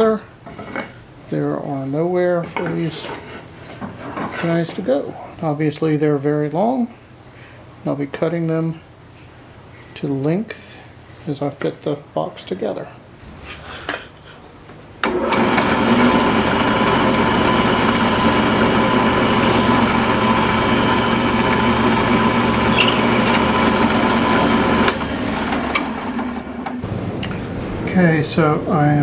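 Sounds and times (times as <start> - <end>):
power tool motor running: 15.4 - 26.4.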